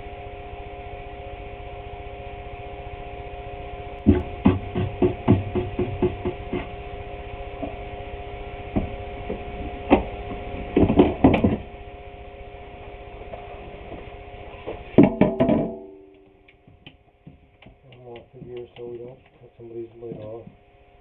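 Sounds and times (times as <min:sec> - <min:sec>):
knocks and clatter: 0:04.0 - 0:06.8, 0:08.8 - 0:11.7, 0:15.0 - 0:19.3.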